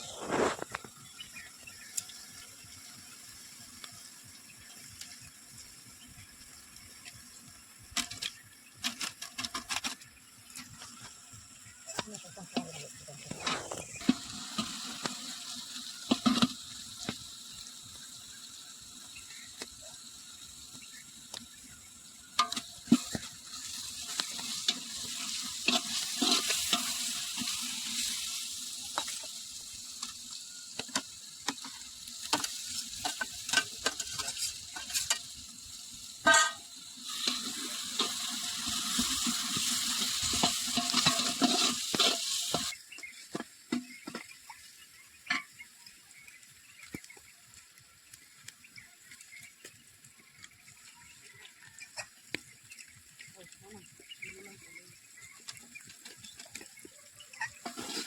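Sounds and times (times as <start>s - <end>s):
utensil scraping a pan: 0.0s - 0.8s, 8.8s - 11.0s, 12.5s - 17.1s, 22.4s - 35.4s, 36.2s - 44.3s, 57.3s - 58.0s
food sizzling in a pan: 0.0s - 58.0s.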